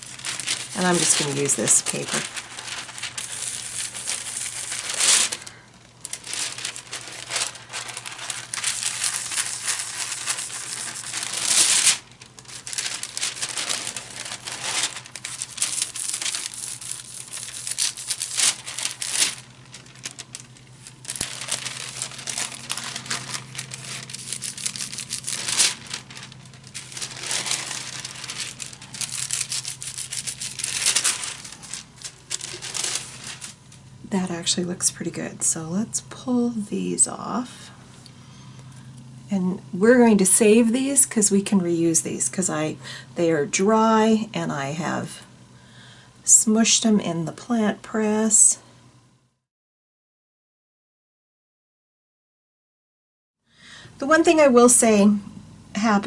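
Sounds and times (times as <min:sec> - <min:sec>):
paper rustling on printing plate: 0:00.0 - 0:33.8.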